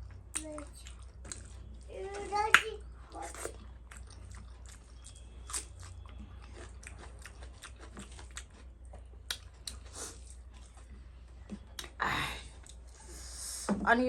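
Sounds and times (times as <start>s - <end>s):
person chewing food: 0.0s - 13.4s
wet mouth clicks: 0.3s - 1.4s.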